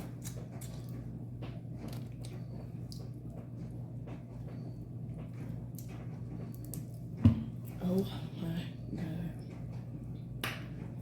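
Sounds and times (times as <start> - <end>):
chewing and lip-smacking: 0.0 - 3.7
steady low hum: 0.0 - 11.0.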